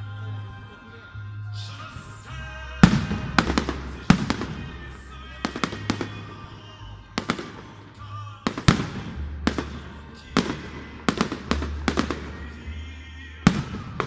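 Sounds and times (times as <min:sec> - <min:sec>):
fireworks bangs and cracks: 0:02.8 - 0:14.0.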